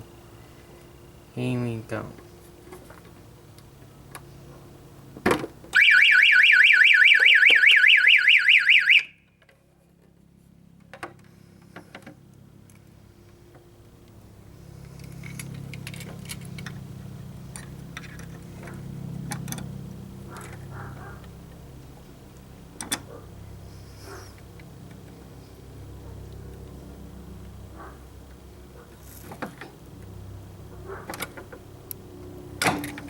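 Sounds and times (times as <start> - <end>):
low hum with clicks: 2.0 - 5.8, 9.0 - 23.5, 24.1 - 33.0
fire alarm warbling: 5.8 - 9.2.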